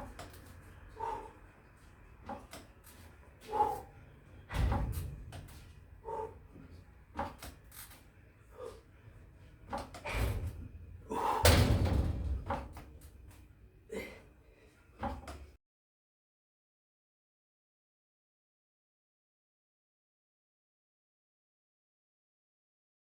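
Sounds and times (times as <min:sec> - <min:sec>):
heavy thuds: 0:09.7 - 0:13.0.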